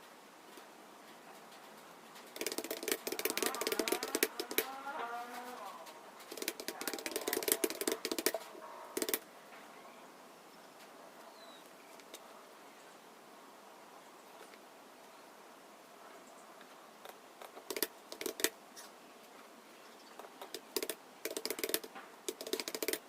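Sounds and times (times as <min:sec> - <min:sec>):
keyboard typing: 0:02.3 - 0:04.8, 0:06.2 - 0:09.2, 0:17.5 - 0:18.5, 0:20.4 - 0:23.0.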